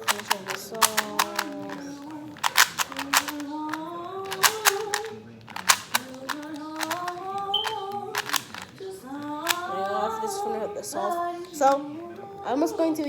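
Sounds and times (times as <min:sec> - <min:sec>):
puzzle cube clicking as turned: 0:00.0 - 0:10.2.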